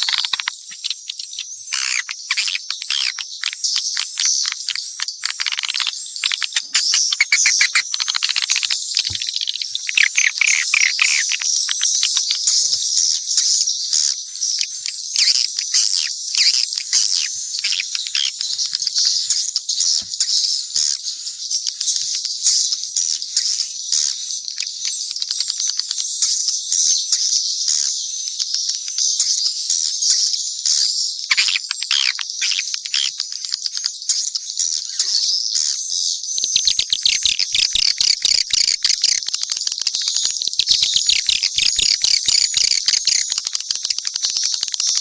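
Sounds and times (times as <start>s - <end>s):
swiftlets twittering: 0.0s - 30.0s.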